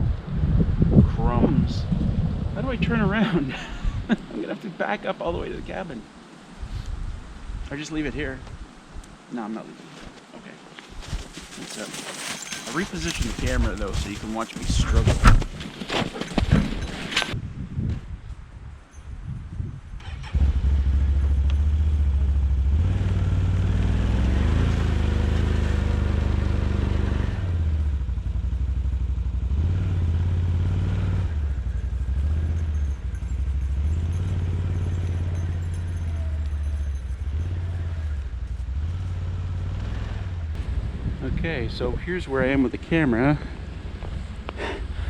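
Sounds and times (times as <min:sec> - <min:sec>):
atv engine revving: 0:20.0 - 0:40.9.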